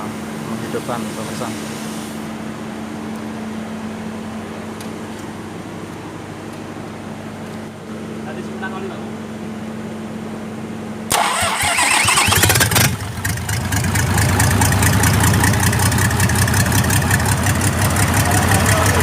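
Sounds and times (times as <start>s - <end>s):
diesel engine idling: 0.0s - 19.0s
starter motor cranking: 11.1s - 19.0s.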